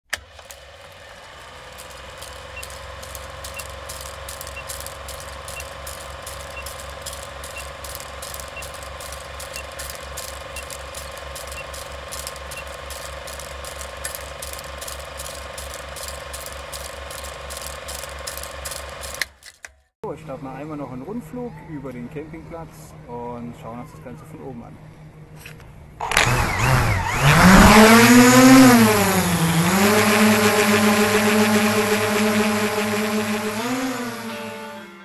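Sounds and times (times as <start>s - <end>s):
drone motors whining: 0.1s - 19.3s, 26.0s - 35.0s
rapid regular ticking: 1.7s - 19.3s.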